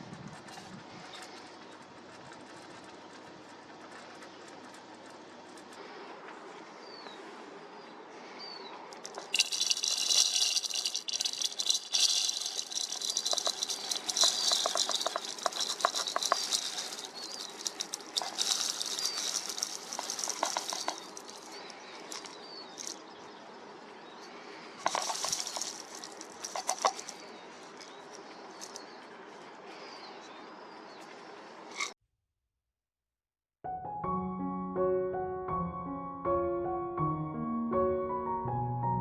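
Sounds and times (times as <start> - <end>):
bird wings fluttering: 9.0 - 23.0
birds chirping and chattering: 12.3 - 31.3.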